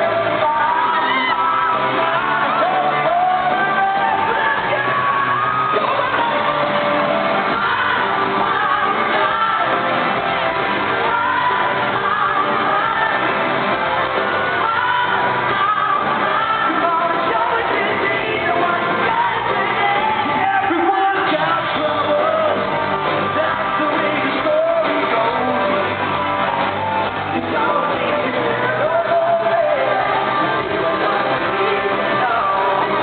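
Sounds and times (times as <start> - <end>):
lead vocals singing: 0.0 - 33.0
live pop-rock band playing: 0.0 - 33.0.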